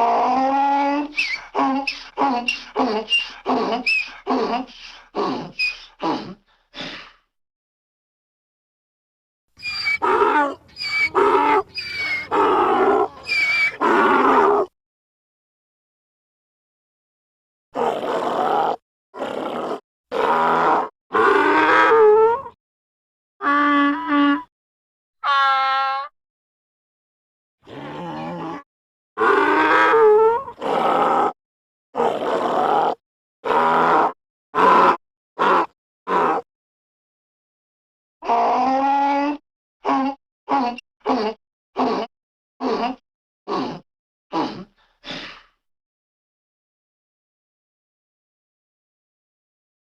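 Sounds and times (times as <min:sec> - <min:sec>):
donkey braying: 0:00.4 - 0:04.6, 0:09.6 - 0:14.6, 0:25.2 - 0:26.1.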